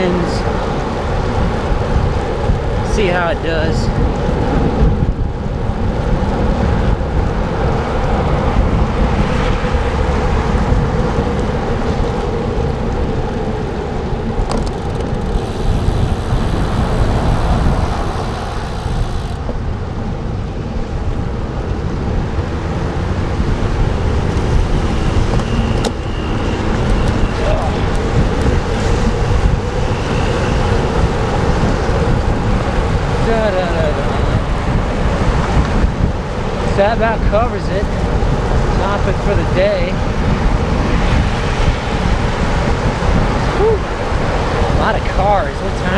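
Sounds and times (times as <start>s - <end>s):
bicycle road and wind noise: 0.0s - 45.9s
cars passing: 0.0s - 45.9s
rain: 39.9s - 45.9s.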